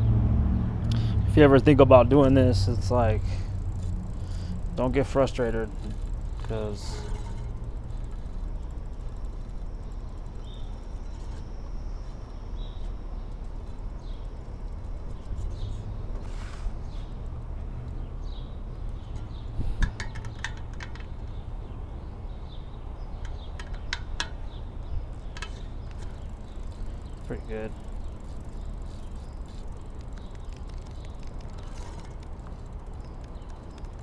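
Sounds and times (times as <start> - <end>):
low background rumble: 0.0 - 34.0
light metallic clinks: 3.0 - 15.8.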